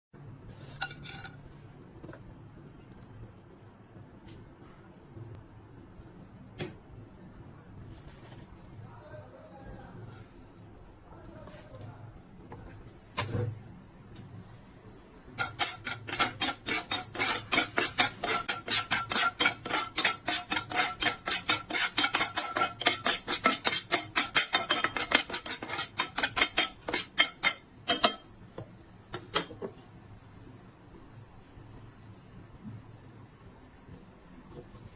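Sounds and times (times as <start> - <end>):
popcorn kernels popping: 15.4 - 28.4.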